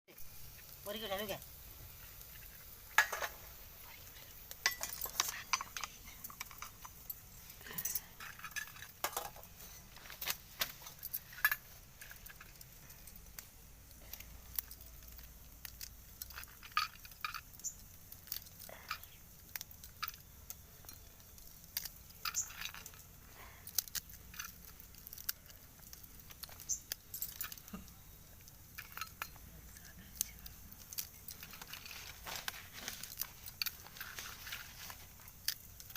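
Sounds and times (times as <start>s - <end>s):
cooking utensils clinking: 2.4s - 3.5s, 4.5s - 9.9s, 28.7s - 29.4s.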